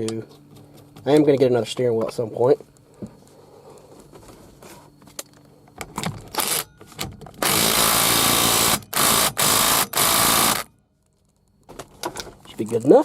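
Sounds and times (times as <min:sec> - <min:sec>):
power tool tightening nut: 0:07.4 - 0:10.7.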